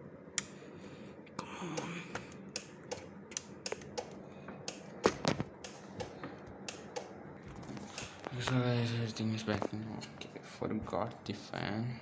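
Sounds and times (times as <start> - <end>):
clicks of laptop parts handled: 1.8 - 8.4.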